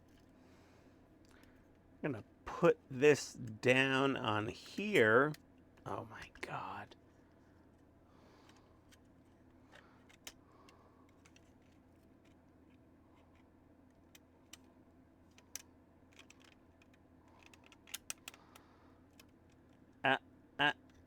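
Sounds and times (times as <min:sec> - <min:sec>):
model kit parts clicking: 0:09.7 - 0:12.4, 0:15.3 - 0:19.8.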